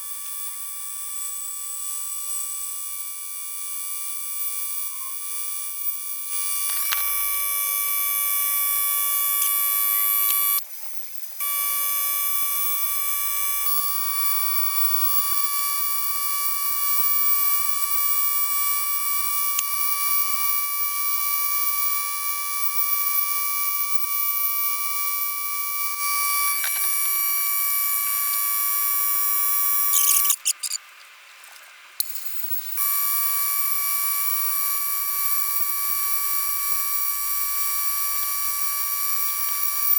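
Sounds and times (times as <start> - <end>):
die grinder whining: 0.0 - 30.9.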